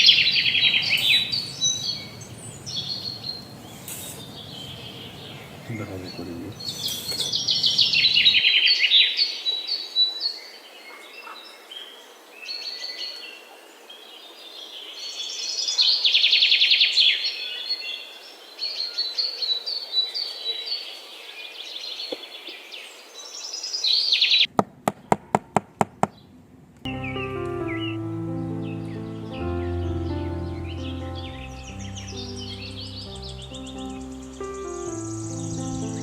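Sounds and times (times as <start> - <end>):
birds chirping and trilling: 0.0 - 13.4, 26.9 - 36.0.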